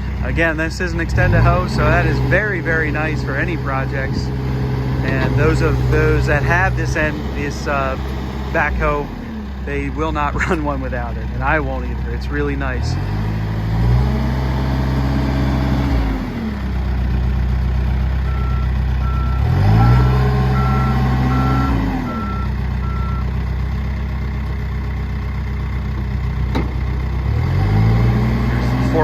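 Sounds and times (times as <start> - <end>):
diesel engine revving: 0.0 - 29.0
reversing alarm beeps: 18.3 - 23.3.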